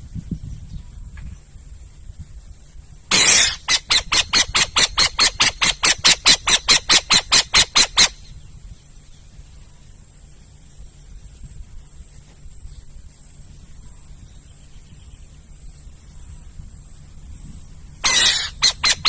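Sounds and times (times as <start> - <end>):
owl screeching: 3.1 - 8.2, 18.0 - 19.0
owl raspy calls: 3.1 - 8.4, 18.0 - 19.0.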